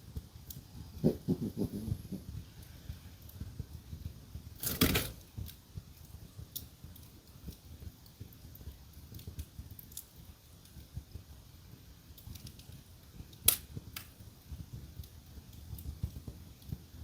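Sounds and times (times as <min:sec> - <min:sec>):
fire crackling in fireplace: 0:00.0 - 0:17.0
sharp pops of fire: 0:02.5 - 0:17.0.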